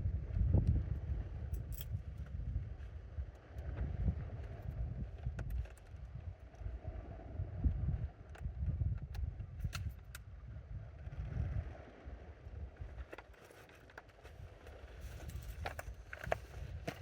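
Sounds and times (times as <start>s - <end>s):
wind buffeting microphone: 0.0s - 13.1s.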